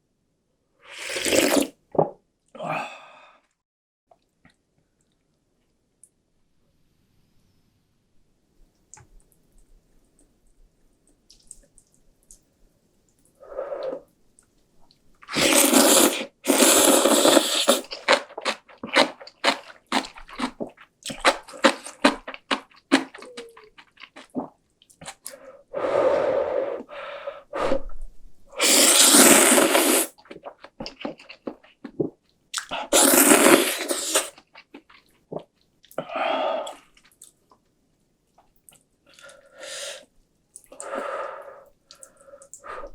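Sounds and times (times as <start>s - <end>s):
slurping noodles: 0.9s - 1.8s, 15.2s - 27.8s, 28.6s - 32.0s, 32.6s - 34.4s
wet chewing and smacking: 11.1s - 12.5s, 16.6s - 25.4s, 30.2s - 32.9s, 33.9s - 36.0s.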